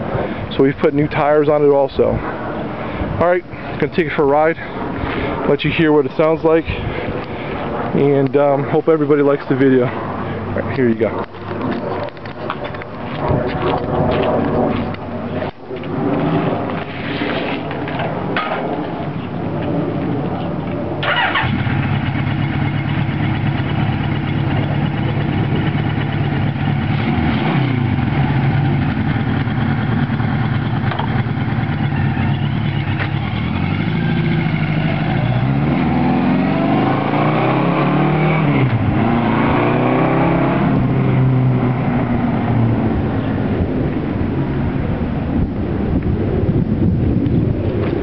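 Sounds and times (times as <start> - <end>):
motorcycle engine running loud: 21.1 - 43.3.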